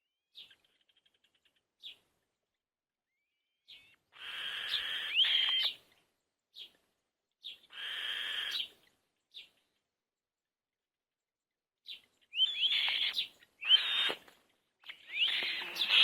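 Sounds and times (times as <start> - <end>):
bird chirps: 3.1 - 6.0, 11.8 - 16.0
birds raspy calls: 3.7 - 5.8, 7.4 - 8.8, 12.3 - 16.0.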